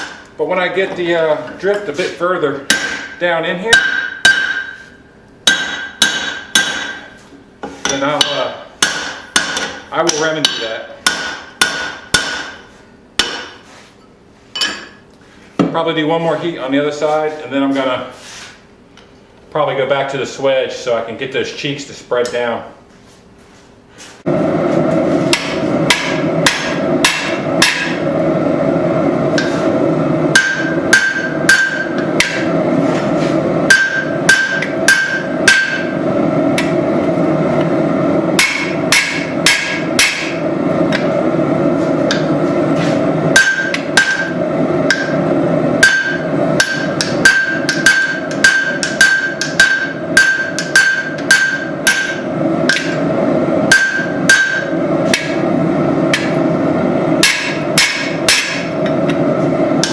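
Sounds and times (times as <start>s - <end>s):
hammer blows on anvil: 2.6s - 7.1s, 7.8s - 13.6s, 25.3s - 28.1s, 29.3s - 36.9s, 38.4s - 41.2s, 42.1s - 53.1s, 53.7s - 55.4s, 56.1s - 56.5s, 57.2s - 59.9s.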